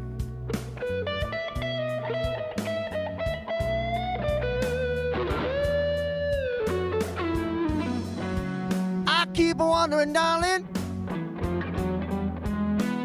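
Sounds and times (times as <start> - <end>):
drums: 0.0 - 13.0
electric blues guitar lead: 0.0 - 13.0
bass line: 8.4 - 11.1
person singing: 9.1 - 10.7.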